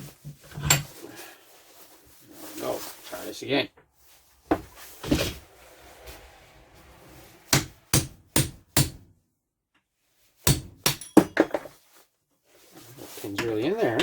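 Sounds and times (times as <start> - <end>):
hatchet striking metal punch: 7.5 - 9.0, 10.5 - 11.4.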